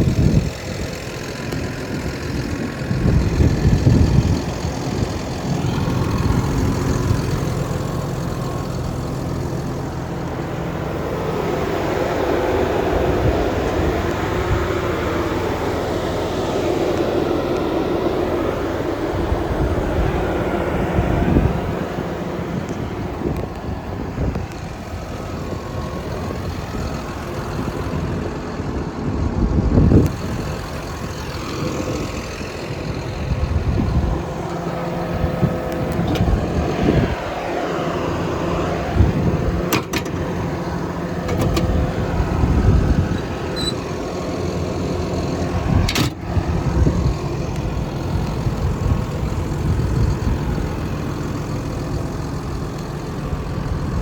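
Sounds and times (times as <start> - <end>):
diesel engine idling: 0.0 - 54.0
short knocks and clicks: 39.7 - 40.3, 41.2 - 41.8.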